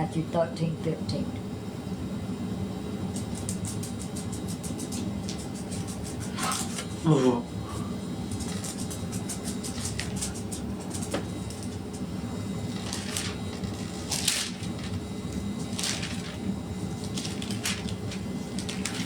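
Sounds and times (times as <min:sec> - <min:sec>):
steady low hum: 0:00.0 - 0:19.0
paper pages swishing: 0:15.6 - 0:19.0.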